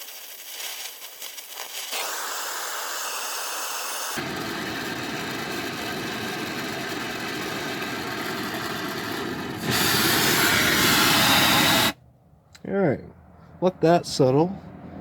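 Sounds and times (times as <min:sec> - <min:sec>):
torch flame hissing: 0:00.0 - 0:12.0.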